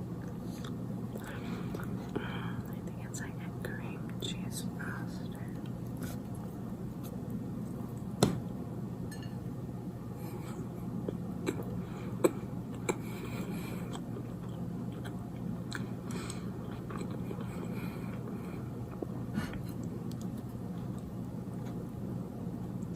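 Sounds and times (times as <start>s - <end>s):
steady low hum: 0.0s - 22.9s
wet chewing mouth sounds: 11.0s - 21.8s.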